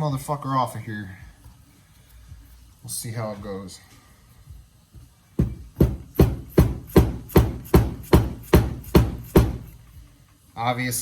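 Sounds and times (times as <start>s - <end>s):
hammer striking metal joint: 5.4s - 9.7s.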